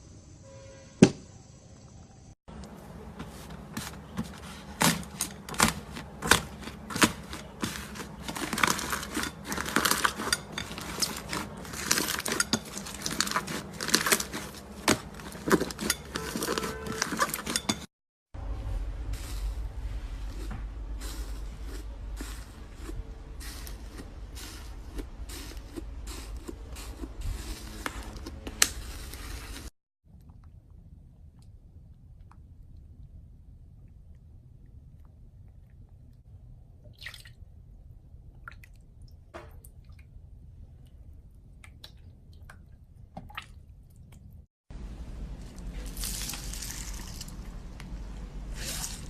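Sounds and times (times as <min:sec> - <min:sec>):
crunchy slime squished by hand: 0:03.8 - 0:17.5.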